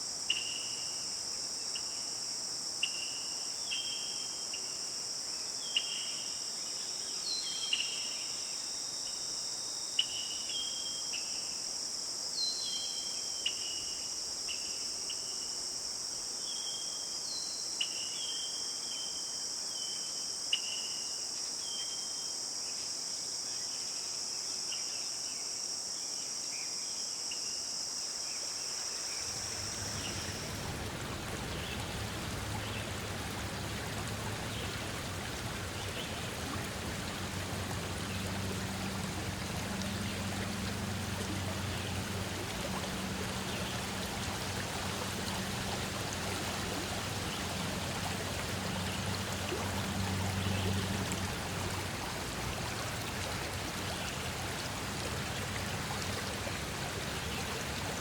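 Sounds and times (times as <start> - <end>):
crickets chorus: 0.0 - 58.0
rushing water: 29.1 - 58.0.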